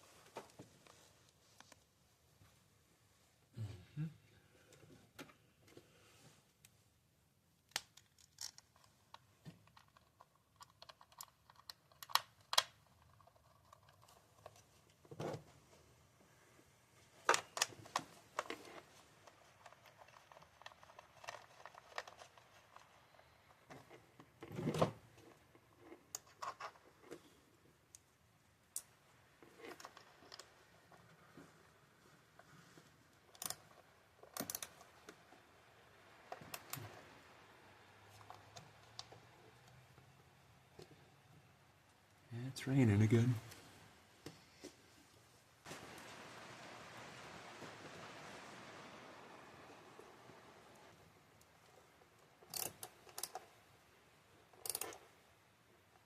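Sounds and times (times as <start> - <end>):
metal clicks of hand tools: 52.5 - 53.4, 54.6 - 55.0.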